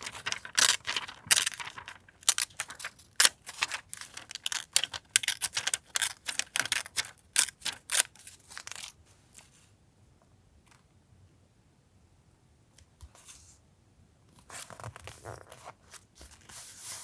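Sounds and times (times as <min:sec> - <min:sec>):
paper rustling and crinkling: 0:00.0 - 0:09.6, 0:14.4 - 0:17.0.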